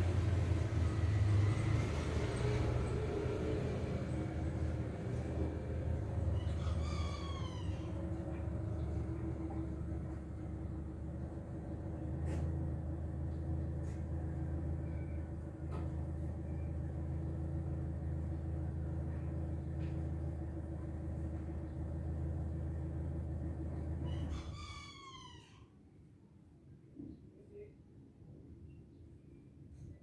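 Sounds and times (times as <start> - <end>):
steady low hum: 0.0 - 24.5
cat meowing: 6.4 - 8.1, 24.1 - 25.7.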